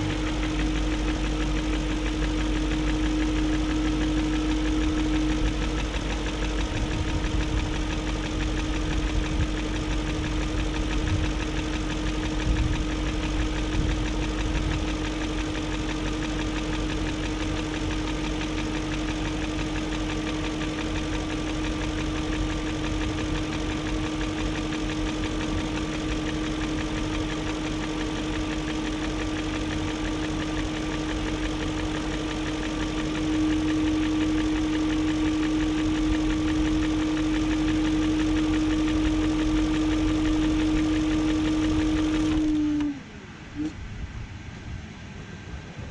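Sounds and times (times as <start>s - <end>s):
fast engine ticking: 0.0s - 43.0s
car engine idling: 0.0s - 45.5s.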